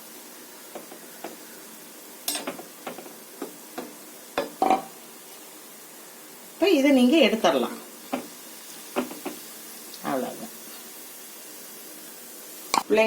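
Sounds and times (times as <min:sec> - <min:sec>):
faint frying sizzle: 0:00.0 - 0:13.0
ladle knocking against pan: 0:02.3 - 0:04.9, 0:09.0 - 0:09.4.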